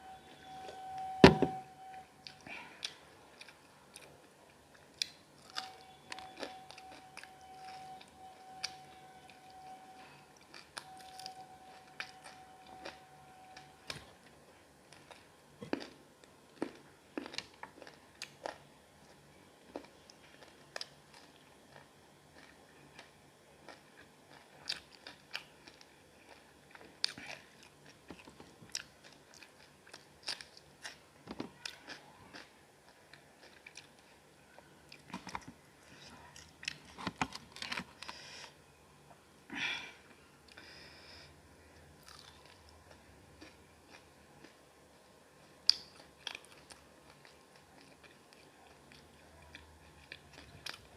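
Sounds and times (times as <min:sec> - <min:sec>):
chewing and crunchy biting: 0:14.9 - 0:31.0, 0:31.6 - 0:34.2, 0:42.0 - 0:44.6, 0:45.6 - 0:50.9.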